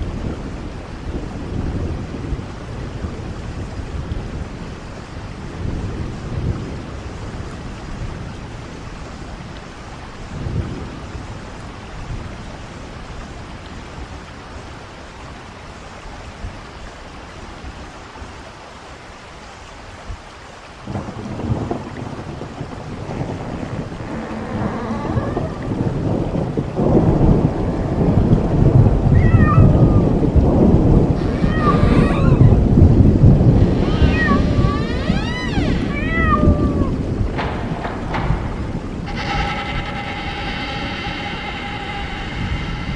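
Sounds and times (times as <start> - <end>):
low thunder rumbling: 0.0 - 14.8, 20.8 - 42.9
steady rain hiss: 0.0 - 42.9
cats meowing and yowling: 24.6 - 25.8, 29.1 - 30.3, 31.1 - 32.7, 33.5 - 37.1.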